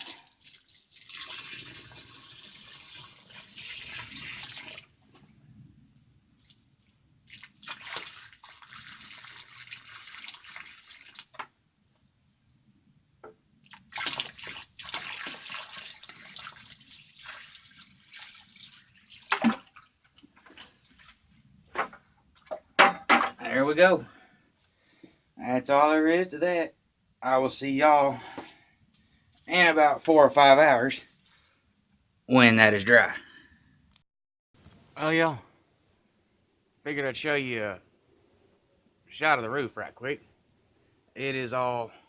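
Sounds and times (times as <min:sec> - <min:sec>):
water splashing onto concrete mix: 0:00.0 - 0:05.0, 0:07.2 - 0:11.4, 0:13.6 - 0:21.2.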